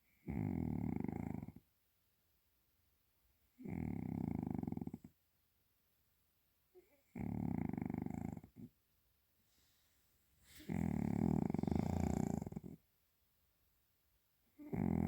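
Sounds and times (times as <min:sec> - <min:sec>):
cat snoring: 0:00.1 - 0:01.6, 0:03.6 - 0:05.1, 0:06.8 - 0:08.7, 0:10.5 - 0:12.8, 0:14.6 - 0:15.0
cat snorting: 0:10.5 - 0:12.8.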